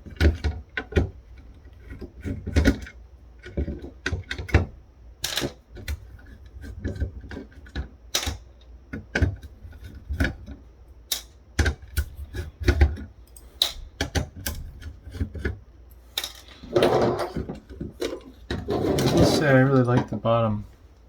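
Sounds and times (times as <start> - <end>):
plastic parts clicking and knocking: 0.0 - 6.1, 6.7 - 15.6.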